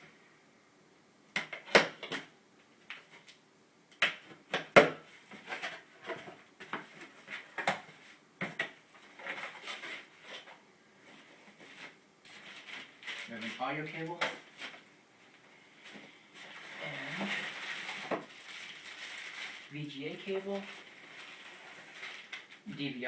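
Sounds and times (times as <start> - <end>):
packaging rustling: 5.2 - 22.8.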